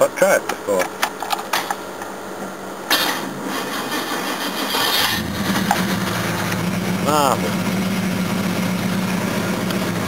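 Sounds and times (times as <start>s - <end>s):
car engine idling: 2.8s - 10.0s
starter motor cranking: 2.9s - 6.7s.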